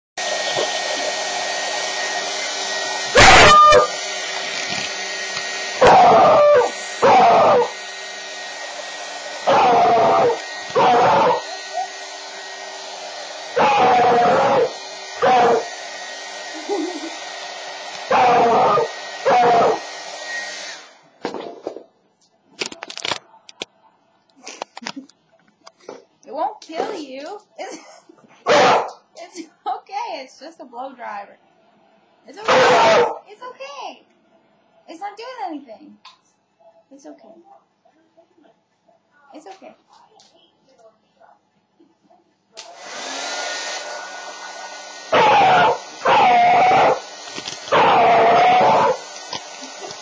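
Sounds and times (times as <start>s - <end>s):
hair dryer running: 0.2s - 21.1s, 32.4s - 33.2s, 42.6s - 50.0s
puppy barking: 3.2s - 3.9s, 9.5s - 11.4s, 28.4s - 29.0s, 32.4s - 33.3s.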